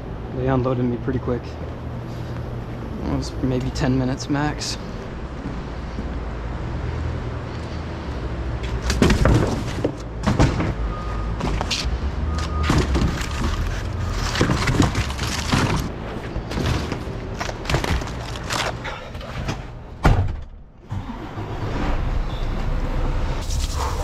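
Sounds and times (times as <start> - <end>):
debris knocking and scraping: 8.8 - 10.8, 12.6 - 18.8.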